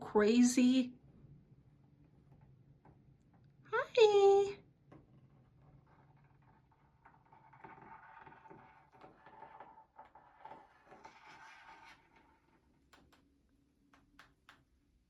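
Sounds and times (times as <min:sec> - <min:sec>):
soft scratching: 0:05.1 - 0:12.8.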